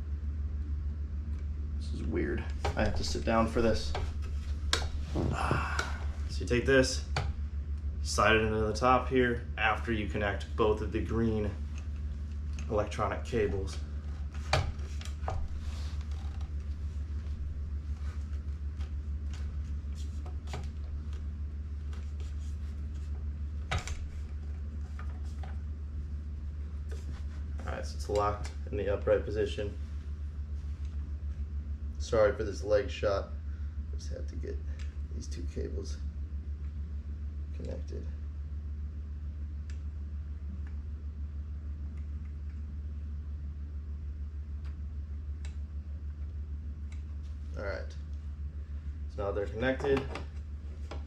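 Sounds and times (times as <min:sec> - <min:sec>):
steady low hum: 0:00.0 - 0:51.0.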